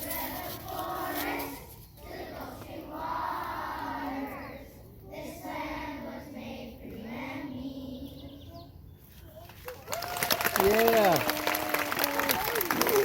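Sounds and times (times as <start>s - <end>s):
children singing in unison: 0.0s - 8.4s.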